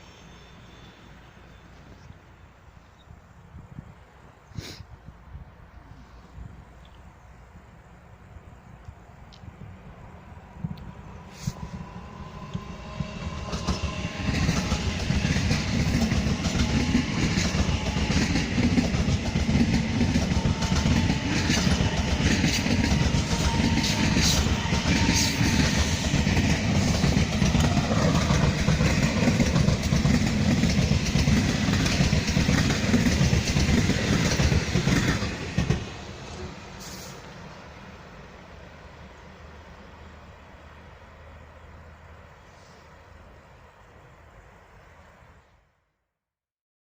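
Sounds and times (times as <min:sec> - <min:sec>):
train wheels clattering over rails: 0:11.4 - 0:37.2.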